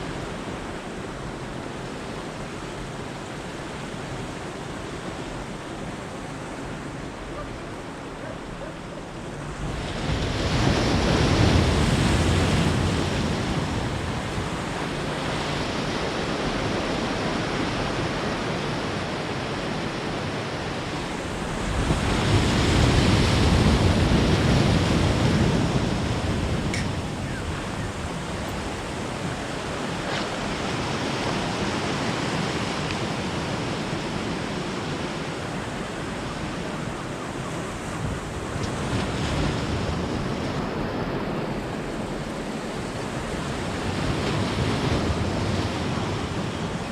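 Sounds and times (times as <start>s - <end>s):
sea waves breaking: 0.0s - 46.9s
wind buffeting microphone: 20.9s - 46.9s.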